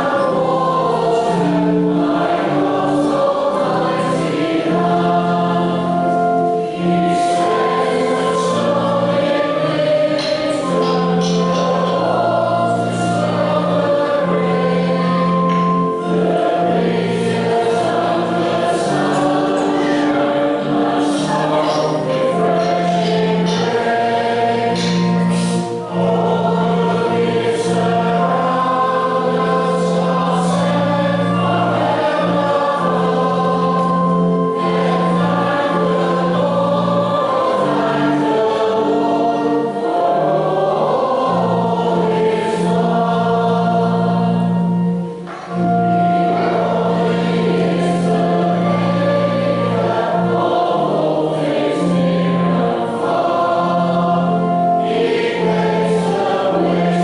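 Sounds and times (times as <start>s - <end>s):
choir singing a hymn: 0.0s - 57.0s
low held notes: 0.0s - 57.0s.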